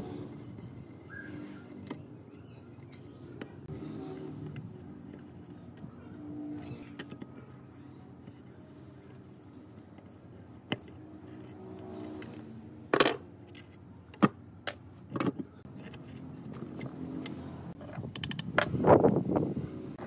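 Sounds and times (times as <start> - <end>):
metal parts clinking and knocking: 11.4 - 16.9.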